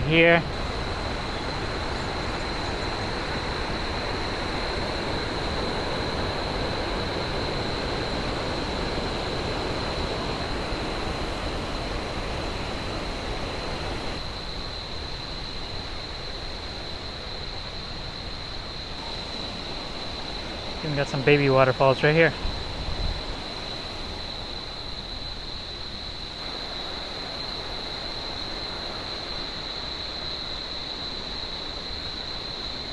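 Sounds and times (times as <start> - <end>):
waterfall rushing: 0.0 - 0.9, 19.0 - 22.6.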